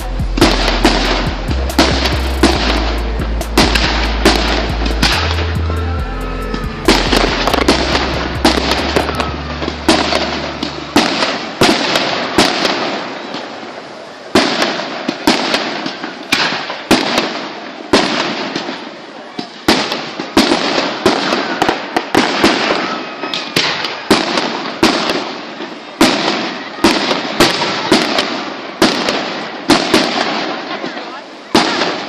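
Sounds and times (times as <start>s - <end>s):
music with low bass line: 0.0s - 11.0s
fireworks bangs and bursts: 0.0s - 32.0s.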